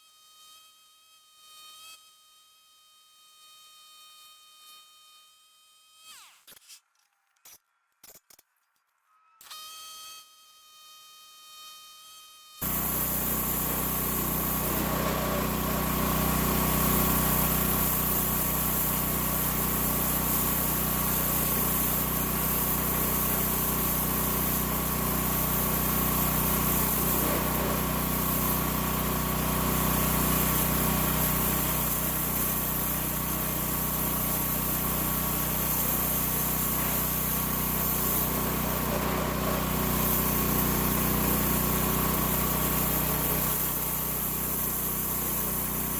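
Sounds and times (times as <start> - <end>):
gasoline engine running: 12.6 - 45.9.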